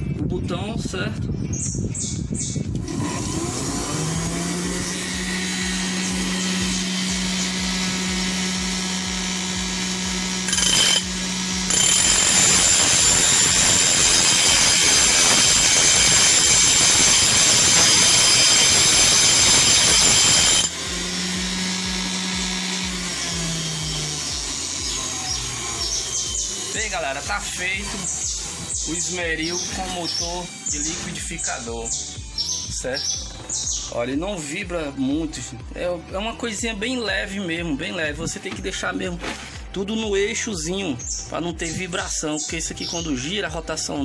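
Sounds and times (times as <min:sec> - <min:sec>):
bench grinder humming and whining: 0:02.8 - 0:33.9.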